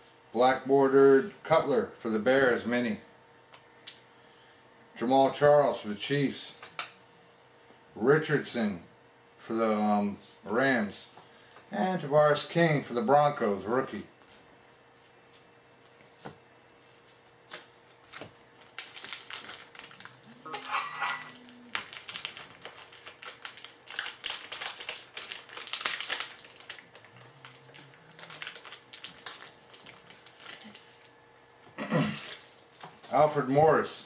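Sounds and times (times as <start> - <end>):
foil wrapper crinkling: 17.4 - 20.6, 21.3 - 31.2, 32.2 - 33.0
cards rustling: 17.5 - 20.3, 21.4 - 31.2.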